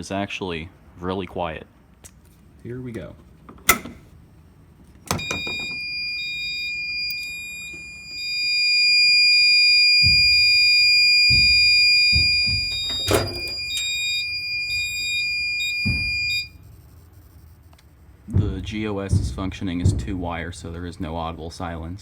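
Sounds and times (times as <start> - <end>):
fire alarm horn tone: 5.1 - 18.1
dull thuds: 9.7 - 16.5, 18.3 - 20.7.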